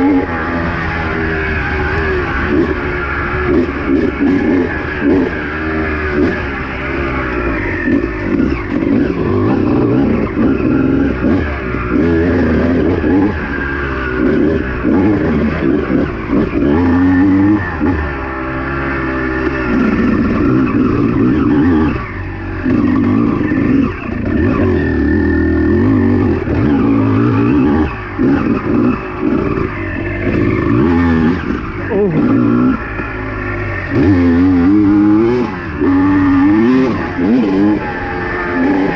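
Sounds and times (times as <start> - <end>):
two-stroke dirt bike engine revving: 0.0 - 38.9.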